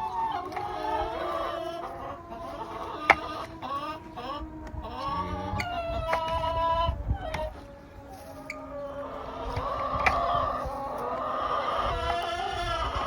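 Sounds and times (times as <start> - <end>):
hens clucking: 0.0 - 13.0.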